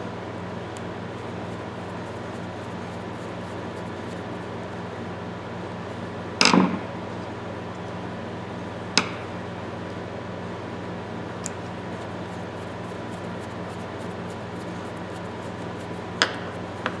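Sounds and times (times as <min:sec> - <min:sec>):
steady low hum: 0:00.8 - 0:06.2, 0:11.4 - 0:17.0.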